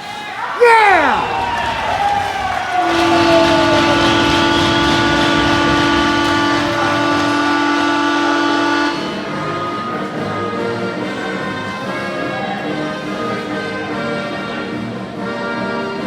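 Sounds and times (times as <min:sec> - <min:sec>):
music playing: 0:00.6 - 0:01.4
goal horn blast: 0:02.8 - 0:09.2.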